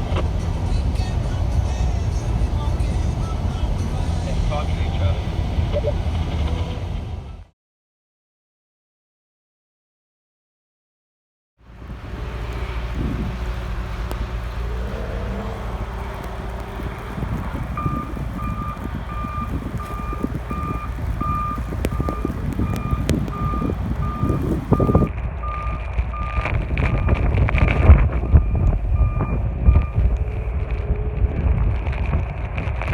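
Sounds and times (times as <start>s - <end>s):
wind noise: 0.0s - 7.4s, 11.7s - 32.9s
low engine rumble: 0.0s - 7.5s, 11.6s - 32.9s
vehicle reversing alarm beeping: 5.7s - 7.4s, 12.1s - 31.2s.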